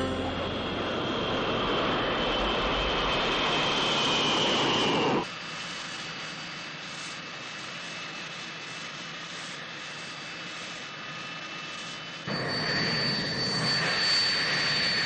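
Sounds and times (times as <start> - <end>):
steady jet hum: 0.0 - 2.0
jet engines roaring with whine: 0.0 - 15.0.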